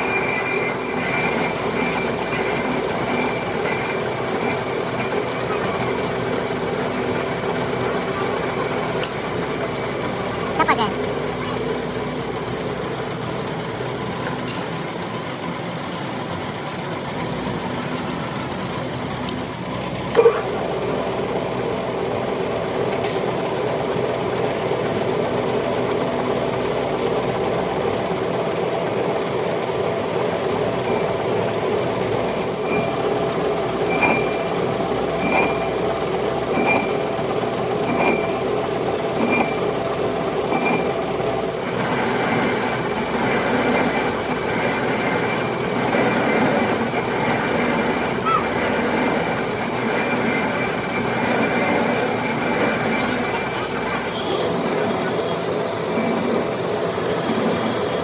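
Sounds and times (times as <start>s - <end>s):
metal lathe running: 0.0s - 58.0s
short ringing chirp: 53.5s - 56.2s.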